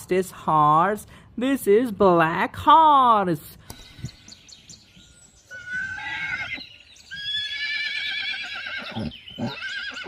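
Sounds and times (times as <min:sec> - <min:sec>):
horse whinnying: 0:05.5 - 0:10.0.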